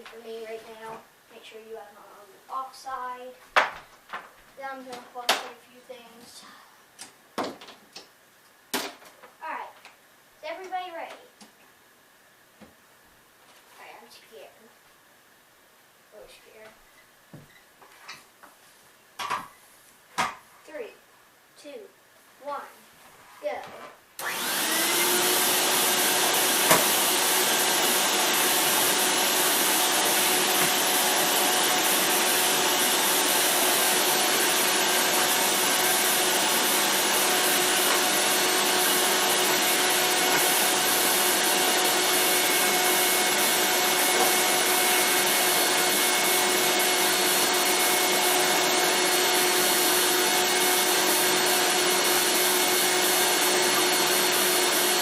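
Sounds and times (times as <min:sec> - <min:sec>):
vacuum cleaner whine: 0:24.2 - 0:55.0.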